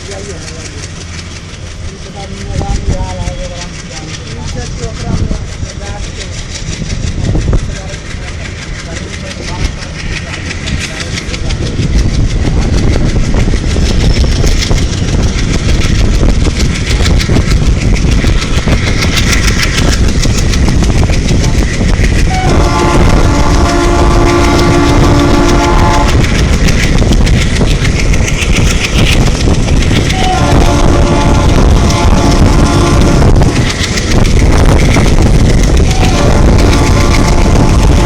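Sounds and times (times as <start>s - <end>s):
diesel locomotive engine running: 0.0s - 38.0s
locomotive horn blast: 22.3s - 26.2s, 30.1s - 33.2s, 35.9s - 38.0s.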